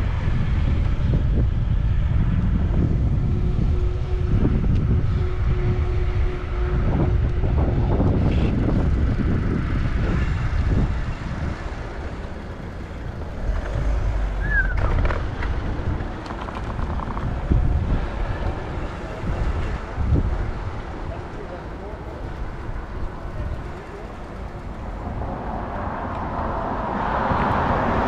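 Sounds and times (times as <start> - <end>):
wind buffeting microphone: 0.0 - 28.0
bike rolling noise: 7.7 - 28.0.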